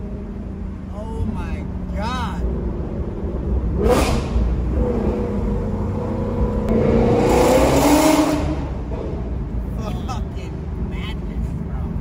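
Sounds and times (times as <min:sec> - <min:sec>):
road rumble: 0:00.0 - 0:12.0
vehicle engine accelerating: 0:02.4 - 0:09.7.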